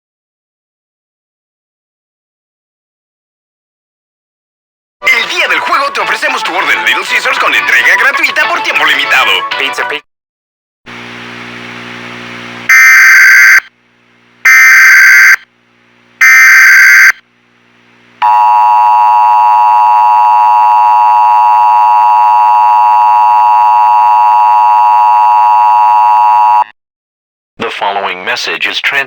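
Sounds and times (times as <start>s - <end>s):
low steady buzz: 10.9s - 12.7s, 13.8s - 14.5s, 15.5s - 16.2s, 17.2s - 21.8s
two-tone attention signal: 18.2s - 26.7s.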